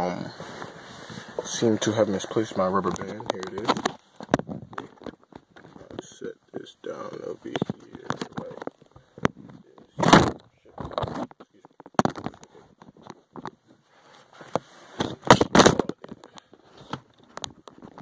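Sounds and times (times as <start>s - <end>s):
rustling cable: 0.0s - 18.0s
clunks of parts being handled: 14.4s - 18.0s.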